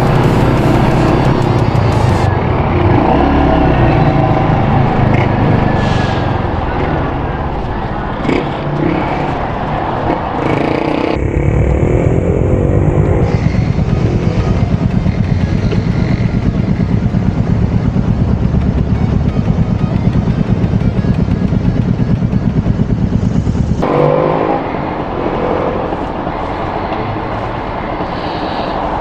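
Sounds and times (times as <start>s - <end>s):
street noise: 0.0s - 29.0s
motorcycle engine thumping: 13.2s - 23.8s.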